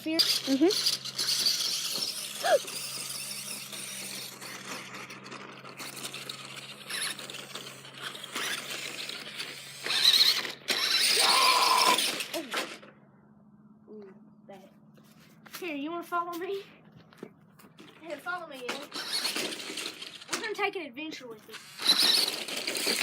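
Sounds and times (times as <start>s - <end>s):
small electric motor whirring: 0.0s - 12.9s, 18.2s - 20.6s, 21.5s - 23.0s
wheels squealing and scraping: 0.0s - 12.9s, 17.8s - 20.4s, 21.5s - 23.0s.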